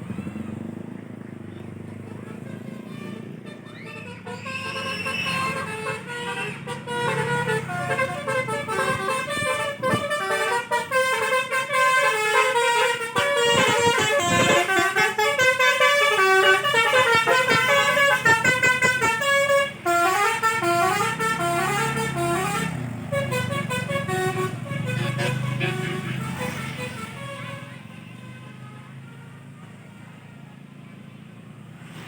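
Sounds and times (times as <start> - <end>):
multi-tone bus horn tune: 0.0 - 32.0
low engine hum: 12.6 - 32.0.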